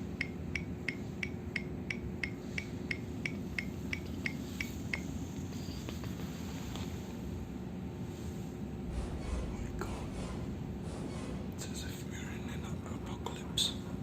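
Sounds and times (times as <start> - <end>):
high beeping ticks: 0.0 - 5.9
train humming at platform: 0.0 - 14.0.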